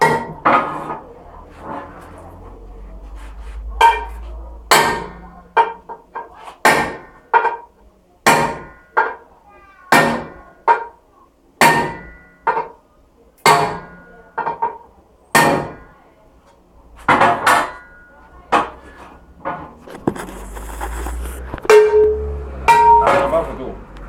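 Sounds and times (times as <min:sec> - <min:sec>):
hammer striking metal: 0:03.8 - 0:05.8, 0:21.7 - 0:23.3.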